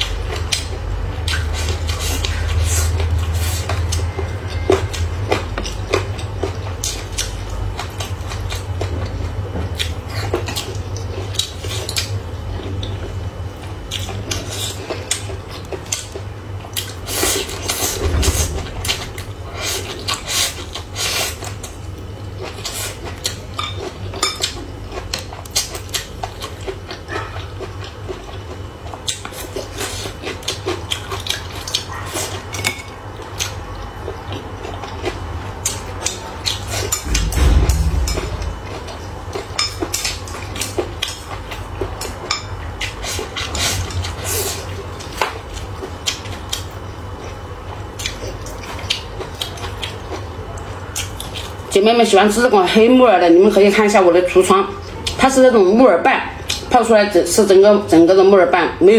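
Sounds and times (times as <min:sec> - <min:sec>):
steady low hum: 0:17.8 - 0:20.8, 0:36.9 - 0:39.3.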